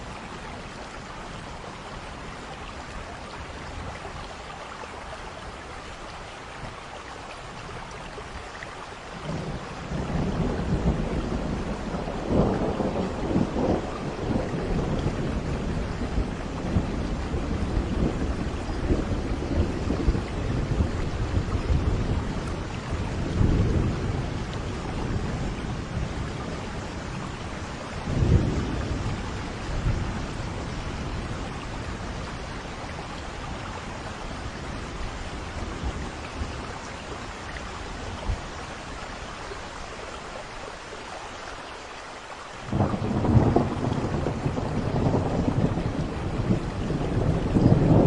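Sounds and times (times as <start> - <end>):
steady rain: 0.0 - 48.0
low rolls of thunder: 9.2 - 38.7, 42.6 - 48.0
loud thunderclap: 42.7 - 48.0.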